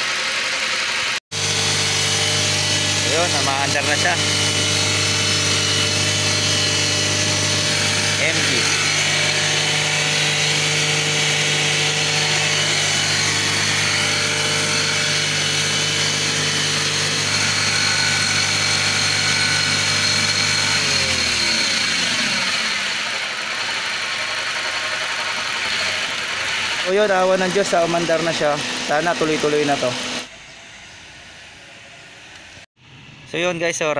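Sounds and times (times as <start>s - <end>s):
car engine running: 0.0s - 1.6s, 22.2s - 32.6s.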